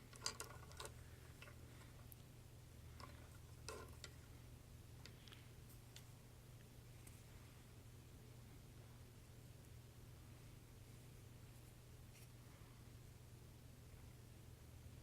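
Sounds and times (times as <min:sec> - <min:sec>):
plastic toy parts clicking: 0:00.0 - 0:01.6
low steady hum: 0:00.0 - 0:15.0.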